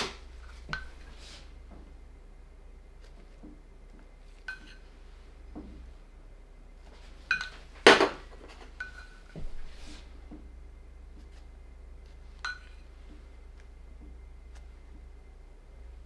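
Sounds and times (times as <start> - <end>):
tools clattering: 7.9 - 8.7
tools clinking: 7.9 - 8.7.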